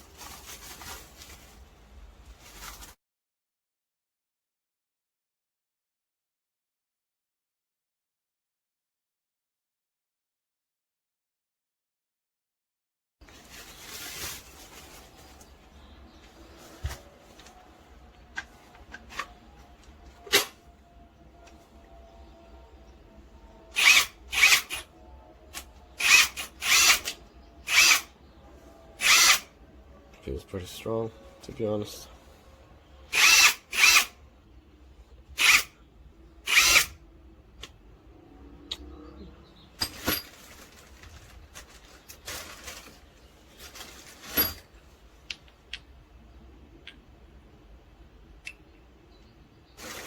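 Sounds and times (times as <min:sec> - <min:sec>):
short rustle: 0:00.0 - 0:03.0
impact wrench bursts: 0:26.0 - 0:28.1, 0:29.0 - 0:29.5, 0:33.1 - 0:34.1, 0:36.5 - 0:36.9.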